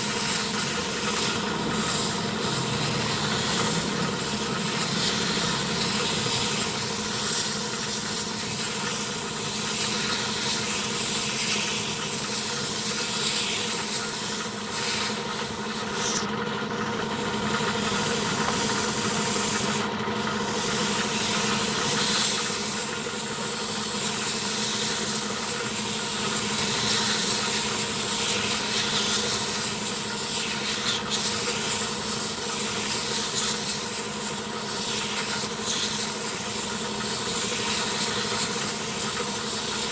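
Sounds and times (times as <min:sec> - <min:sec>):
compressed air hissing: 0:00.0 - 0:16.4, 0:17.3 - 0:39.9
motor humming: 0:00.0 - 0:39.9.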